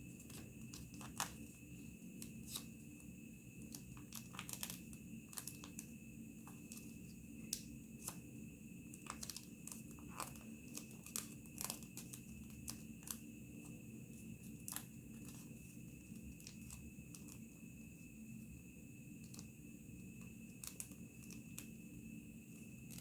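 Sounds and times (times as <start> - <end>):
paper crinkling and rustling: 0.2 - 1.4, 3.7 - 5.8.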